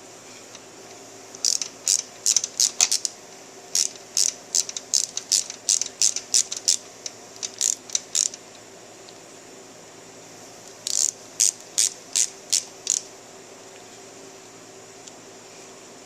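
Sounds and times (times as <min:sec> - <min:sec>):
hand ratchet clicking: 0:01.4 - 0:03.1, 0:03.7 - 0:08.4, 0:10.8 - 0:13.1.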